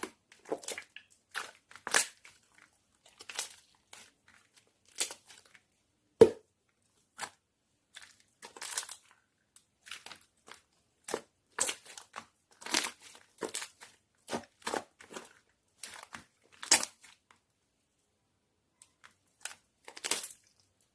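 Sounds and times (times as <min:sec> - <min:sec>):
slime crackling and popping: 0:00.0 - 0:05.6, 0:09.8 - 0:17.2, 0:18.9 - 0:20.5.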